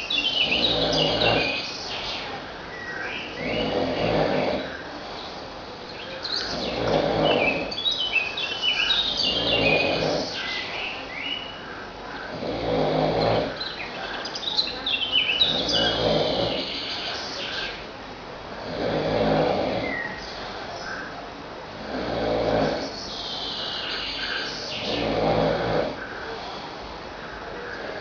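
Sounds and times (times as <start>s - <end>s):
man snoring heavily: 0.0s - 1.7s, 3.4s - 4.8s, 6.5s - 7.8s, 9.1s - 10.4s, 12.3s - 13.6s, 15.4s - 17.2s, 18.5s - 20.7s, 21.7s - 23.0s, 23.8s - 26.8s
birds chirping: 0.0s - 28.0s.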